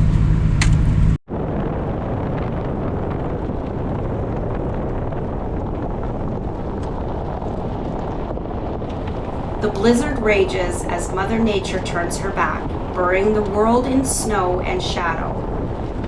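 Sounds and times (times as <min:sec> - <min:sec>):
wind noise on microphone: 0:00.0 - 0:16.0
vehicle engine hum: 0:08.9 - 0:16.0.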